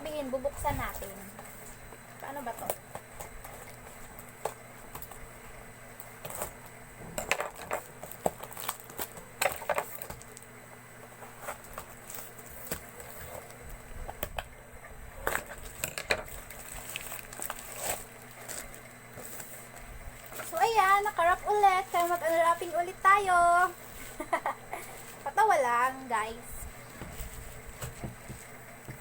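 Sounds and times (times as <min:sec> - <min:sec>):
cardboard and plastic packaging rustling: 0:06.0 - 0:14.3, 0:15.2 - 0:29.0.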